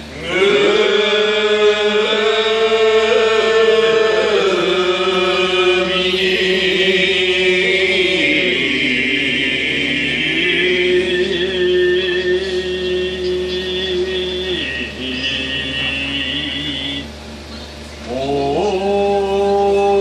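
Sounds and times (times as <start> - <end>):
work chant sung in long held notes: 0.0 - 17.2, 18.1 - 20.0.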